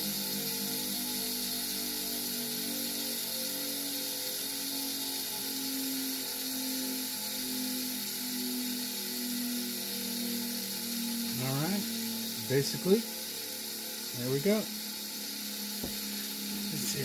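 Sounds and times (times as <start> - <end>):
buffing wheel humming: 0.0 - 17.0.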